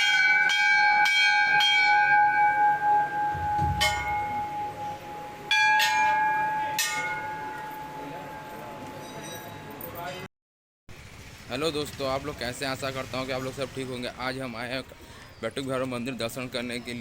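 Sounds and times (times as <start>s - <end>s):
temple bells ringing: 0.0s - 10.0s.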